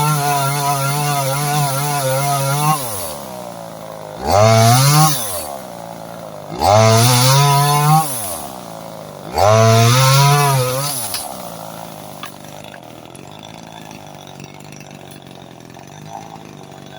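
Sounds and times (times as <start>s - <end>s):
chainsaw revving and idling: 0.0s - 16.9s.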